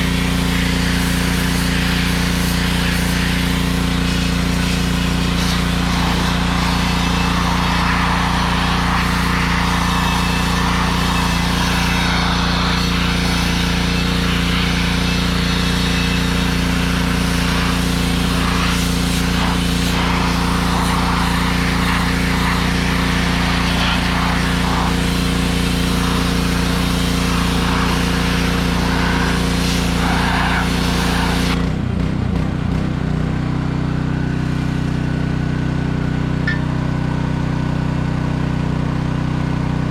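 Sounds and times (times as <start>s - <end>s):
sandblasting spray hissing: 0.0s - 31.6s
pressure washer engine running: 0.0s - 39.9s.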